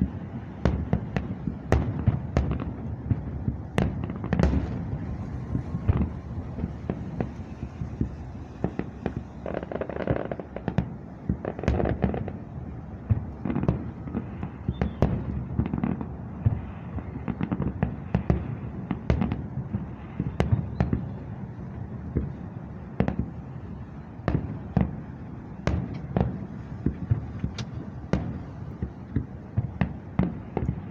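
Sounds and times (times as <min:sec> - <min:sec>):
fireworks bangs and pops: 0:00.0 - 0:30.9
low rumble: 0:03.0 - 0:09.5.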